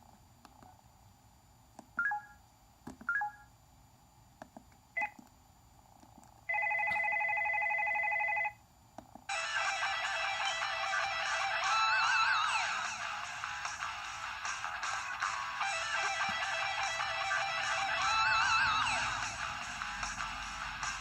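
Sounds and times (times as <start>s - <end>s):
electronic ringing tone: 6.5s - 8.6s, 15.6s - 19.2s
melodic ringtone: 9.3s - 13.8s, 14.8s - 21.0s.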